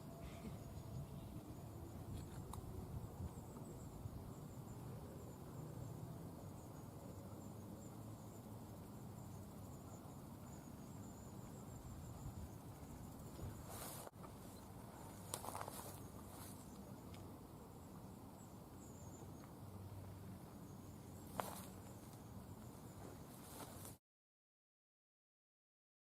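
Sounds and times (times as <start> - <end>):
insects trilling: 0.0 - 24.0.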